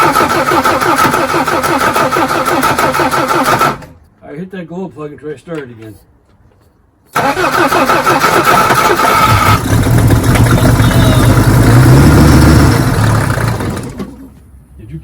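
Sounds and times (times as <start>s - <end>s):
diesel engine cranking and running: 0.0s - 4.0s, 7.1s - 14.5s.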